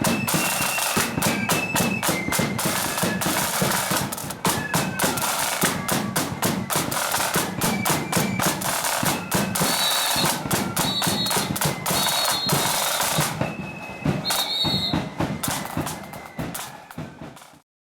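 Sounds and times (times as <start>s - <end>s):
bass drum and snare drums: 0.0s - 17.6s
high held notes: 14.2s - 15.2s.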